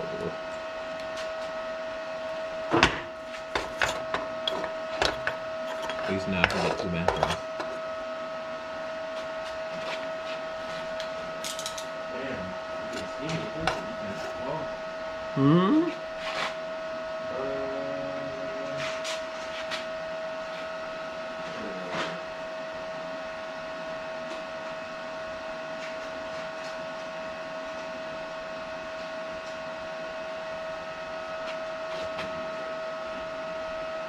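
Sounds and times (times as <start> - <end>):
machine hum and hiss: 0.0 - 34.0
constant high tone: 17.2 - 19.0.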